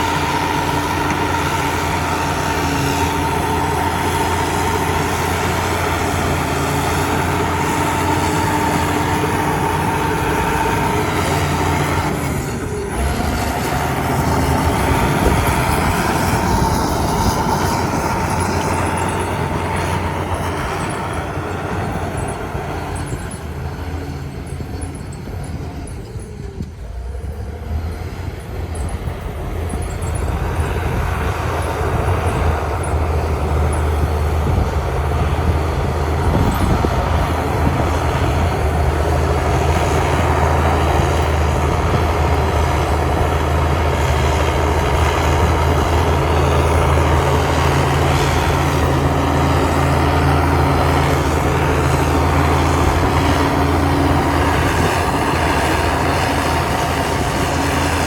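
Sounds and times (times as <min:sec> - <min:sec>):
heavy diesel engine droning: 0:00.0 - 0:58.0.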